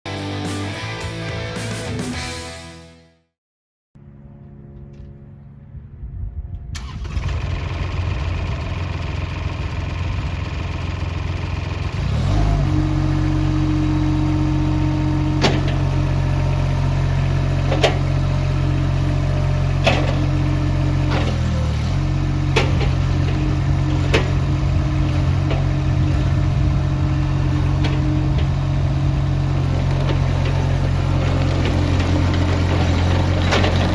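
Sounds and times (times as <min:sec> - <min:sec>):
skid steer loader engine: 0:06.8 - 0:33.9
sharp metallic clanks: 0:19.8 - 0:26.4, 0:29.6 - 0:33.9.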